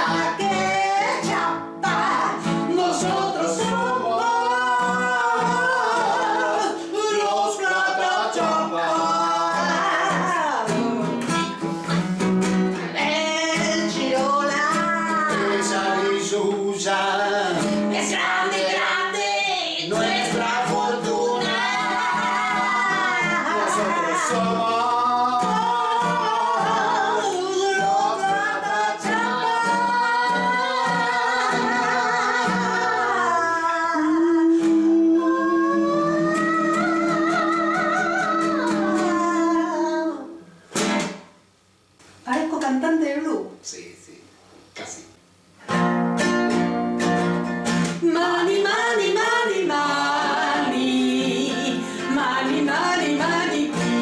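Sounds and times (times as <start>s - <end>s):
woman singing: 0.0s - 11.6s, 12.7s - 40.4s, 47.9s - 54.0s
plucked guitar: 7.9s - 19.1s, 19.8s - 33.4s, 34.5s - 39.9s, 40.7s - 41.4s, 45.6s - 48.1s, 49.6s - 54.0s.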